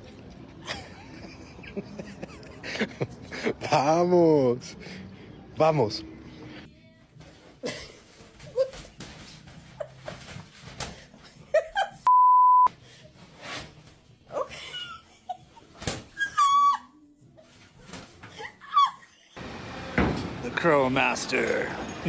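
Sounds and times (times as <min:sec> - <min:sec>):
loud steady beep tone: 0:12.1 - 0:12.7.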